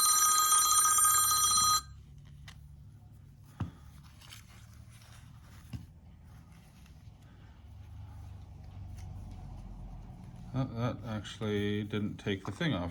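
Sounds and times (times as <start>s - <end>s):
telephone ringing: 0.0s - 2.0s.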